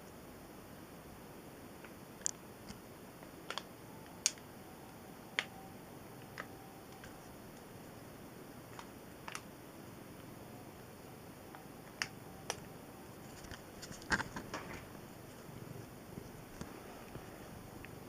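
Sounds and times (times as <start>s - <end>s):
faint steady hiss: 0.0s - 18.0s
heater ticking clicks: 11.4s - 12.7s.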